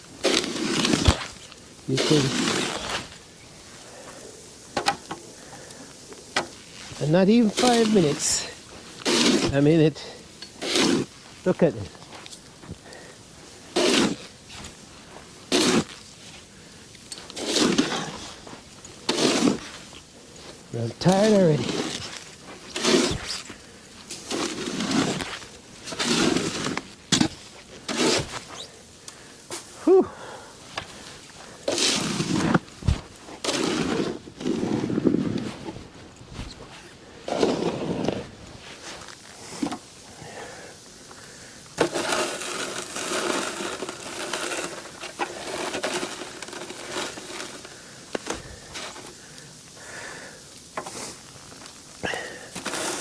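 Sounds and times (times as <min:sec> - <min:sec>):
crunching and scraping in snow: 0:00.0 - 0:53.0
man breathing heavily: 0:29.0 - 0:30.7, 0:40.1 - 0:41.6, 0:47.8 - 0:50.4, 0:52.0 - 0:52.6.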